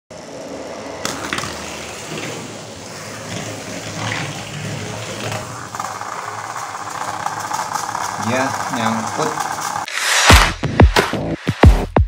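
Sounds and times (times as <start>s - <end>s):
toy car motor whirring and rattling: 1.0s - 10.3s.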